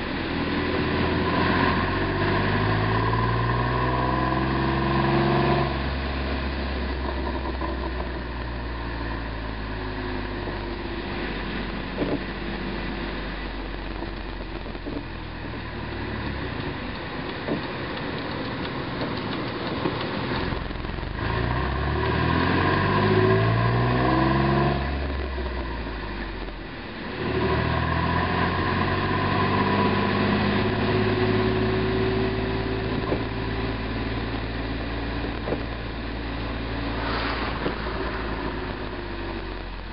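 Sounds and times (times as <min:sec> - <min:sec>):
car engine revving: 0:00.0 - 0:39.9
exhaust pops: 0:06.6 - 0:11.0, 0:11.9 - 0:12.4, 0:13.4 - 0:27.6, 0:29.7 - 0:39.9.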